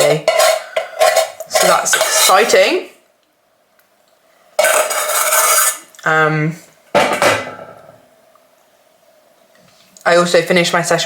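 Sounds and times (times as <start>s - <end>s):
cutlery clattering against dishes: 0.0s - 2.6s.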